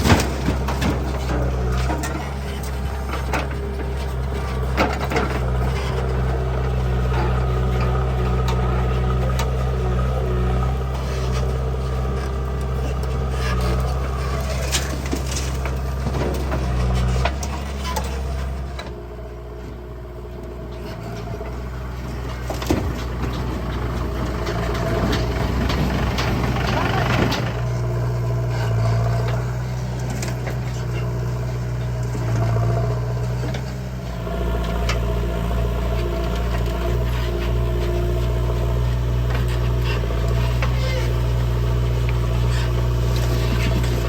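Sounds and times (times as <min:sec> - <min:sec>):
knocks and clanks: 0:00.0 - 0:09.6, 0:21.6 - 0:28.0
diesel engine running: 0:00.0 - 0:44.0.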